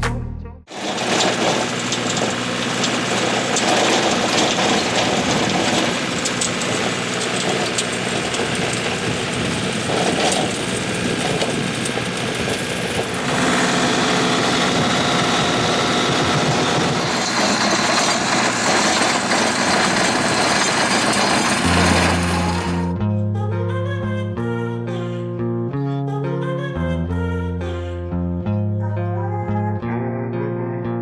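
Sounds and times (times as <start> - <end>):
small engine running: 0.7 - 23.0.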